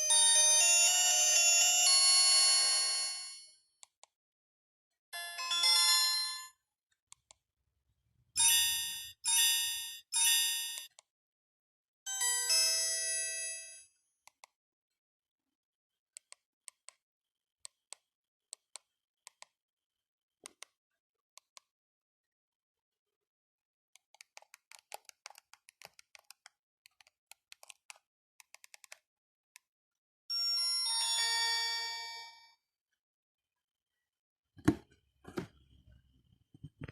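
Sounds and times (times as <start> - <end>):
phone chime: 8.4 - 10.9.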